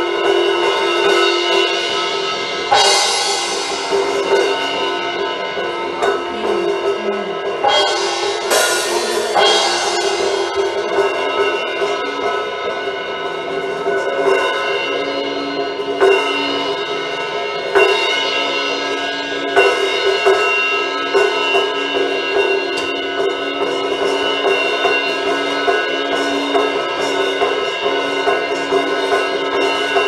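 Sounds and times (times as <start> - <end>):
drum kit: 0.0 - 30.0
cymbal crash: 0.3 - 21.5
sustained chords: 4.0 - 10.7.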